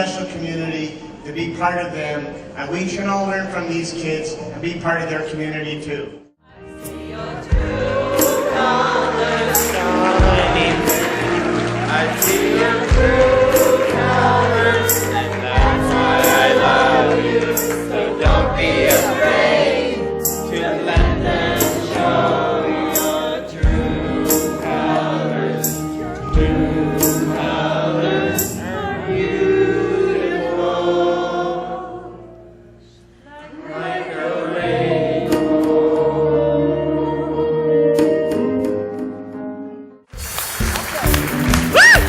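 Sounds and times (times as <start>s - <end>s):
group of voices singing: 6.5s - 32.5s, 33.2s - 38.7s
bass and drums: 7.5s - 8.4s, 10.1s - 11.4s, 12.3s - 14.4s, 15.0s - 16.4s, 18.3s - 18.9s, 21.0s - 21.8s, 23.6s - 24.5s, 26.3s - 27.2s, 40.2s - 42.0s.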